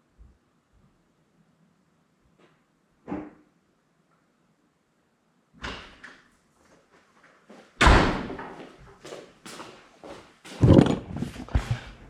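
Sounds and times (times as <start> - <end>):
door slamming shut: 7.8 - 8.5.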